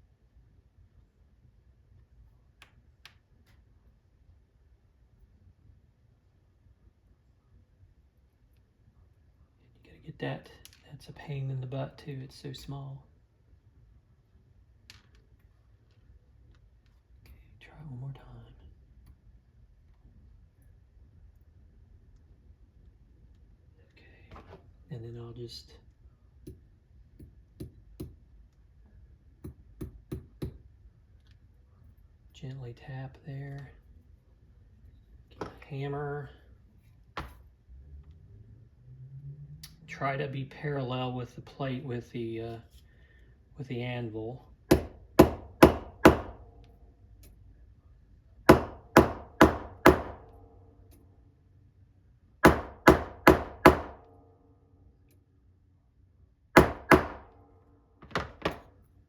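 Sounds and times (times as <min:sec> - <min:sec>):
small hammer tapping metal: 0:26.4 - 0:26.6, 0:27.2 - 0:28.2, 0:29.4 - 0:30.6, 0:44.7 - 0:46.4.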